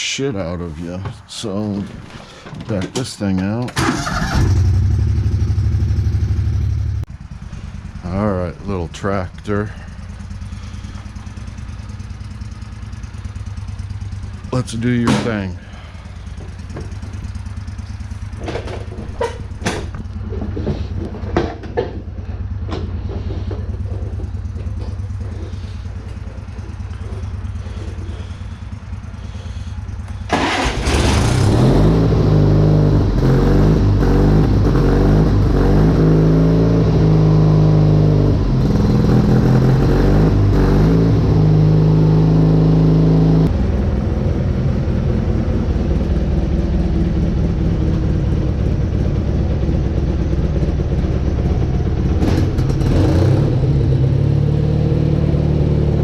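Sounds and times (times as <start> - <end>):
riding mower engine running: 0.0 - 56.0
sharp clicks and knocks: 18.2 - 25.3.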